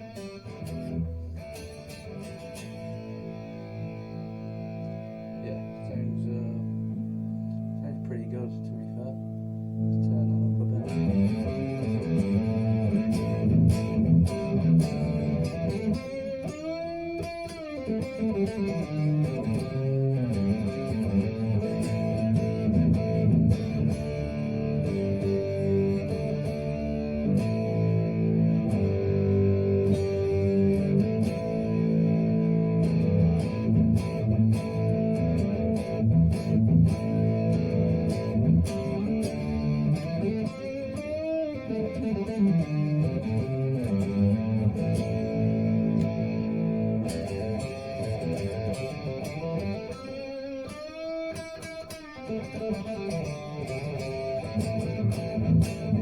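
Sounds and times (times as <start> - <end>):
overdriven electric guitar: 0.0 - 56.0.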